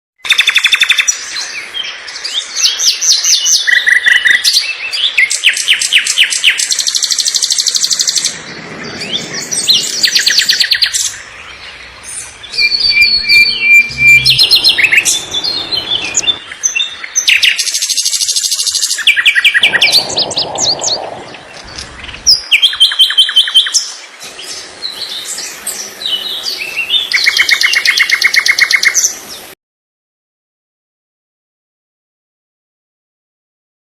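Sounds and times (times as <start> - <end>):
songbirds chirping and singing: 0.3 - 29.6
fast bird trills: 6.5 - 16.4, 17.6 - 23.7
held whistled bird note: 12.2 - 16.4, 19.5 - 21.6.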